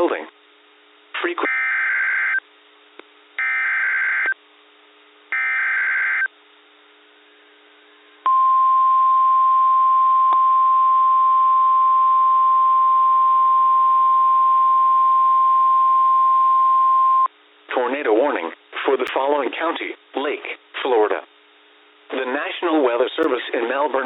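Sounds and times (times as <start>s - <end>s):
steady warning alarm tone: 1.5s - 2.4s, 3.4s - 4.4s, 5.3s - 6.3s.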